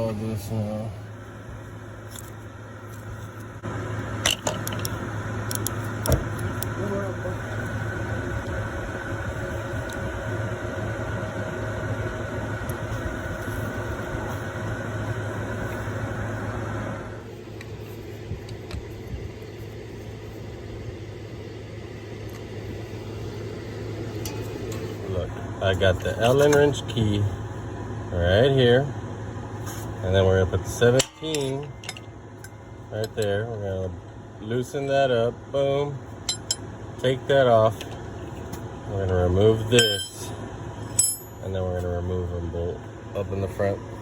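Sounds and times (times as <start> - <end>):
steady low hum: 0.0 - 44.0
hand tools clinking against metal: 30.9 - 33.3, 36.3 - 36.6, 39.8 - 41.5.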